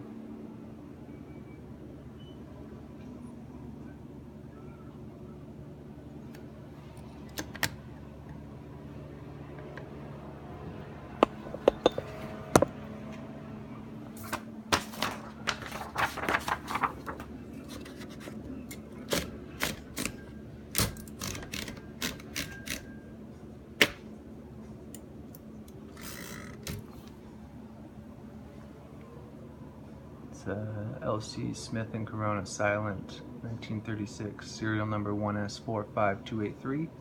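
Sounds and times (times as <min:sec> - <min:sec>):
typewriter rasp: 0:19.0 - 0:22.9
typewriter keys clicking: 0:19.1 - 0:22.9.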